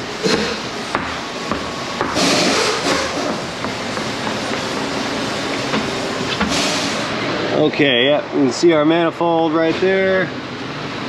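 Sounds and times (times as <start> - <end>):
sharp knocks and clanks: 0.2 - 4.9.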